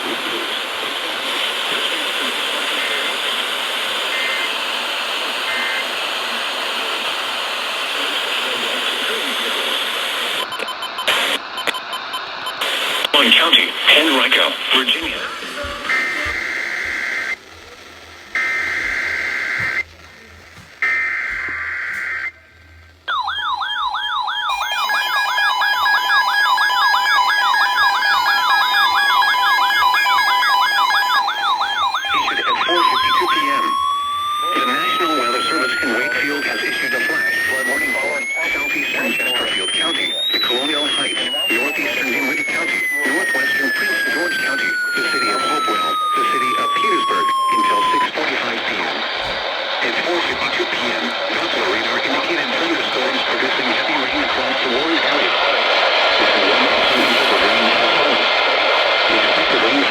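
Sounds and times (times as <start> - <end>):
radio static hiss: 0.0 - 23.1, 24.6 - 59.9
two-tone data bursts: 2.6 - 6.1, 9.6 - 17.4, 18.3 - 19.9, 20.7 - 22.4, 23.1 - 55.3, 56.2 - 58.2
siren-like yelp: 23.1 - 49.5, 56.2 - 58.3.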